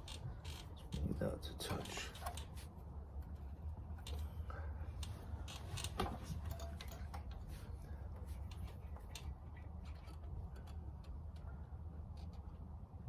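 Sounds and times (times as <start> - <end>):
low steady hum: 0.0 - 13.0.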